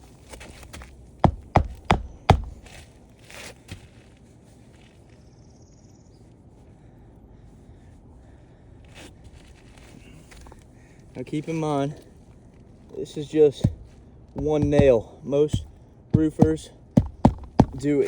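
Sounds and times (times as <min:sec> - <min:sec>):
hammer striking roofing nail: 0:01.2 - 0:02.7, 0:13.6 - 0:18.0.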